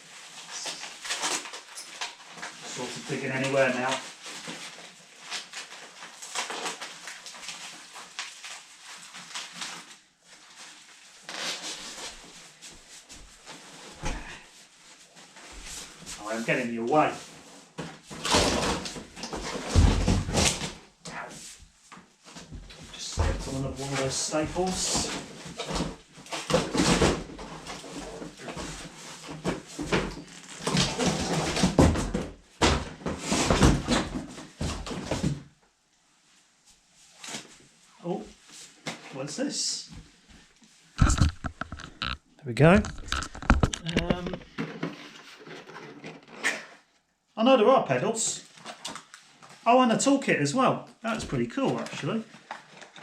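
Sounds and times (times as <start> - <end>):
packaging rustling and scraping: 0.0 - 16.5, 21.4 - 35.4, 40.0 - 46.9, 51.7 - 53.0.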